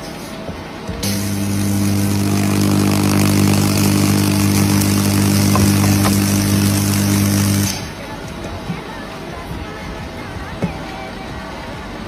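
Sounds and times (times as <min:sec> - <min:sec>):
power tool motor humming: 0:01.0 - 0:07.9.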